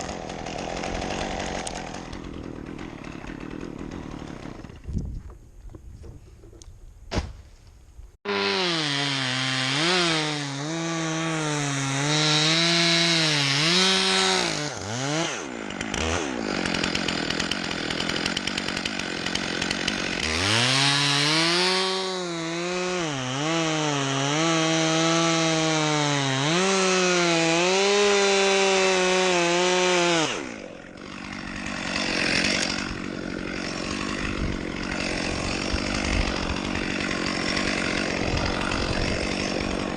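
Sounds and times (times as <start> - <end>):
chainsaw cutting wood: 0.0 - 5.4, 8.2 - 39.9.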